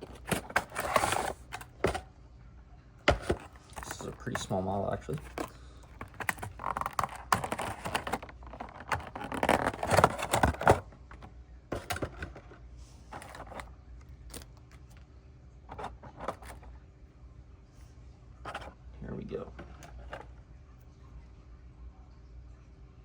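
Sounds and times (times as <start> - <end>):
packaging rustling and scraping: 0.0 - 2.0, 3.1 - 13.7, 14.3 - 15.0, 15.7 - 16.7, 18.4 - 18.8, 19.5 - 20.3.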